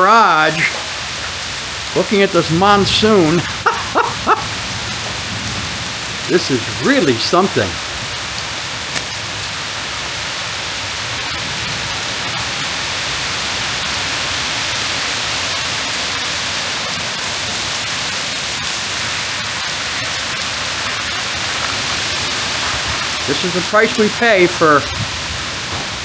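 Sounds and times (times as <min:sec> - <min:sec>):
heavy rain pouring: 0:00.0 - 0:26.0
raindrop ticks: 0:06.2 - 0:09.5, 0:16.0 - 0:24.8.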